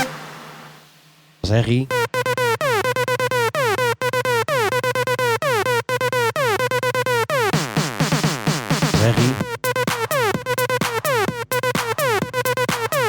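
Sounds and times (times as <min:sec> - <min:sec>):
electronic music with sliding synth: 0:00.0 - 0:00.3.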